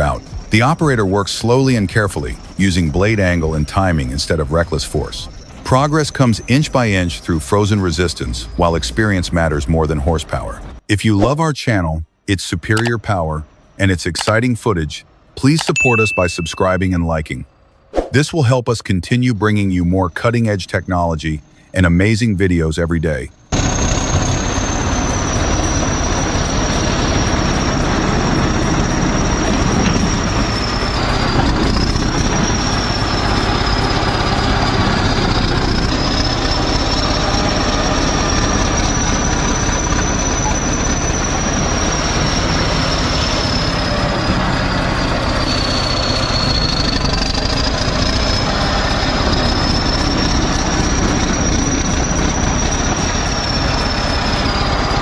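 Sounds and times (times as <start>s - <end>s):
heavy machine engine running: 0.0s - 10.8s, 23.3s - 55.0s.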